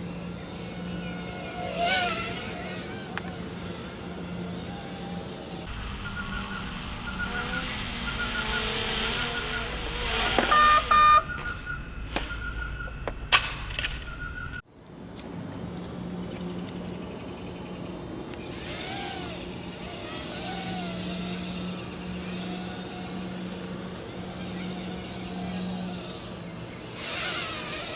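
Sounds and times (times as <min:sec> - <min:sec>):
crickets chirping: 0:00.0 - 0:06.0, 0:14.6 - 0:27.9.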